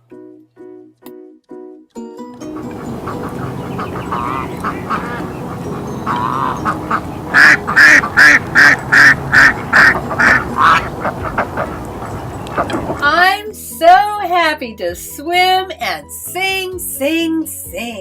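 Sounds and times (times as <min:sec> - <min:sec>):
ducks quacking: 0:02.4 - 0:13.1.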